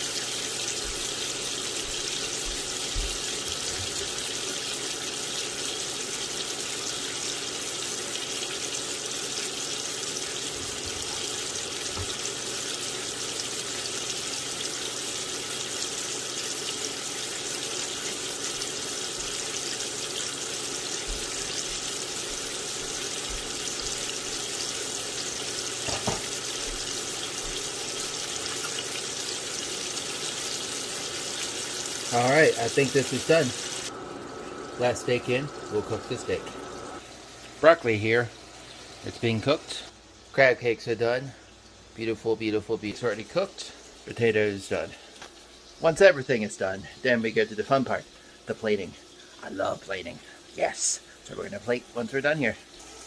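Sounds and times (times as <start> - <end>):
steaks sizzling in butter: 0.0 - 40.3.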